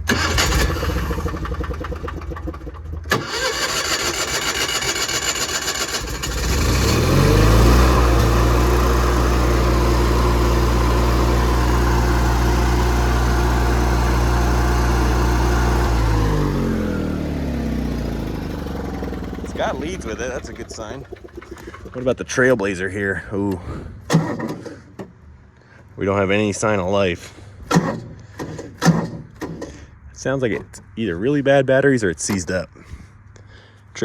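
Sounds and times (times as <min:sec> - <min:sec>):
engine starter cranking: 0:00.0 - 0:22.6, 0:23.5 - 0:25.2, 0:27.6 - 0:30.8
generator engine running: 0:00.0 - 0:25.9.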